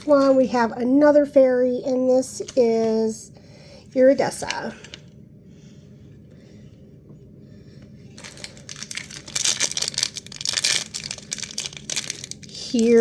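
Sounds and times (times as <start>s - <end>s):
plastic bag tearing and crinkling: 8.2s - 13.0s.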